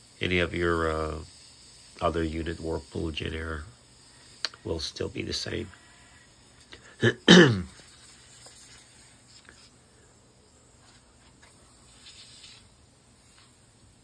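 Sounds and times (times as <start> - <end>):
man clearing his throat: 6.8 - 7.8.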